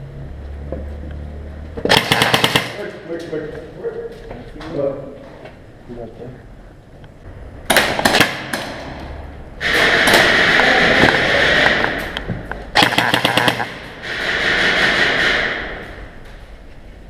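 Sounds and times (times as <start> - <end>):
airsoft gun firing bursts: 1.9 - 2.8, 7.7 - 8.7, 12.8 - 15.7.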